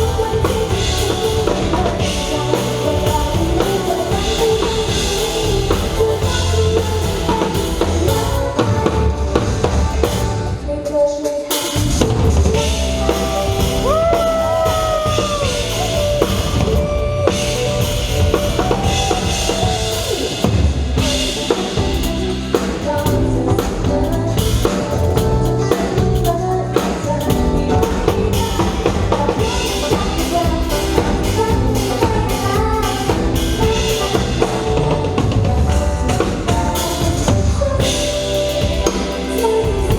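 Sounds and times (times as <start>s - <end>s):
drum kit beat: 0.0s - 39.9s
live pop band: 0.0s - 39.9s.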